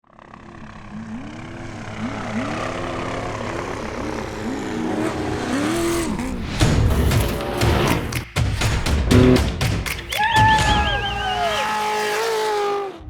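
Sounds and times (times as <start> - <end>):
race engines revving: 0.1 - 8.3, 10.1 - 13.0.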